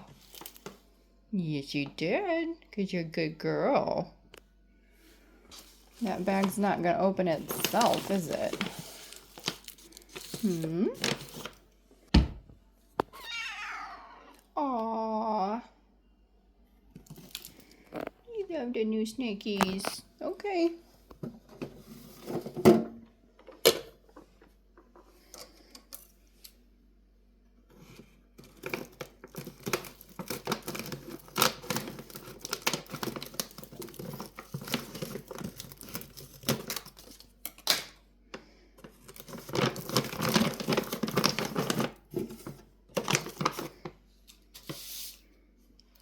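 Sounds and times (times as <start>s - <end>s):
plastic bag crinkling and tearing: 5.9s - 11.6s, 28.4s - 37.8s, 39.0s - 43.9s.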